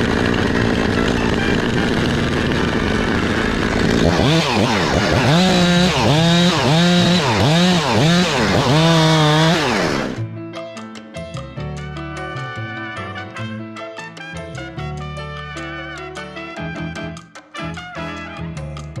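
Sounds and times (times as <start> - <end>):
chainsaw engine running: 0.0 - 10.2
music with brass: 11.8 - 19.0.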